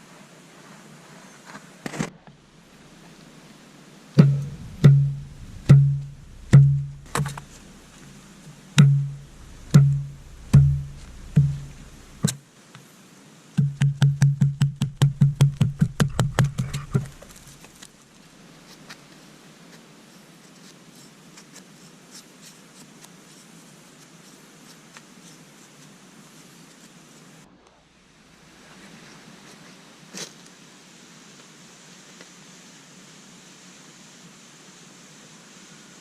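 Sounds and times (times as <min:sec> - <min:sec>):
hard knocks with low ring: 0:04.2 - 0:07.4, 0:08.8 - 0:12.1, 0:13.6 - 0:16.2.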